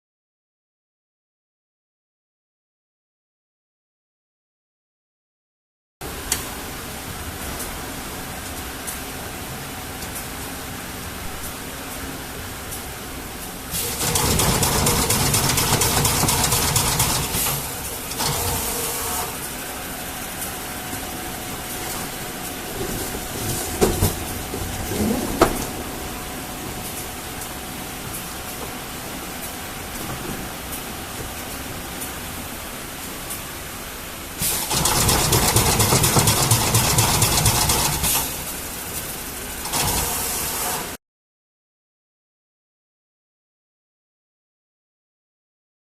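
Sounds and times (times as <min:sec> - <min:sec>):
steady machine hum: 0:06.0 - 0:40.6
stitching machine clatter: 0:13.7 - 0:19.2, 0:34.4 - 0:38.6, 0:39.6 - 0:40.5.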